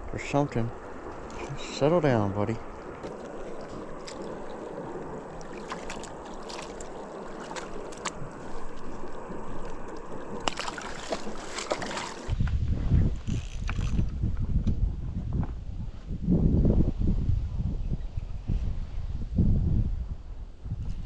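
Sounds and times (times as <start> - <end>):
water sloshing and lapping: 0.0 - 12.4
wind buffeting microphone: 0.0 - 21.0.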